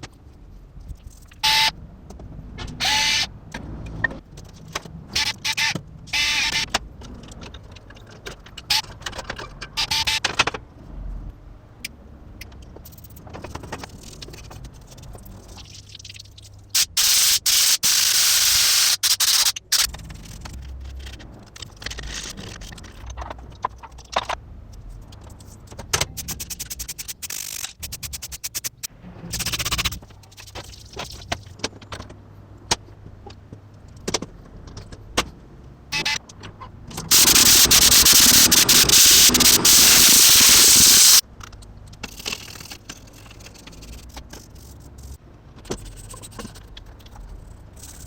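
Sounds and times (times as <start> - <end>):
handling clicks knocks and scrapes: 11.8 - 15.6, 19.6 - 35.4, 41.3 - 48.0
loud steady hiss: 16.8 - 19.9, 37.1 - 41.2.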